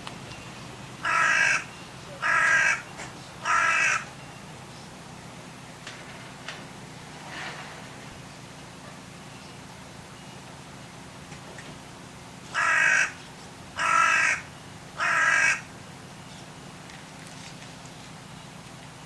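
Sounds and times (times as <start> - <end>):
crow cawing harshly: 1.0 - 4.1, 12.5 - 13.2, 13.8 - 15.7.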